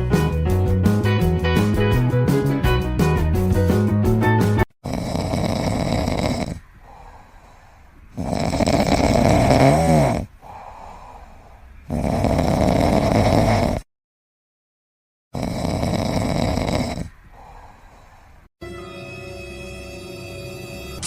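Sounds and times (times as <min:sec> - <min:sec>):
pet snoring loudly: 0:04.8 - 0:07.5, 0:08.1 - 0:13.9, 0:15.3 - 0:18.0
pet breathing quietly: 0:04.8 - 0:13.8, 0:15.4 - 0:18.5.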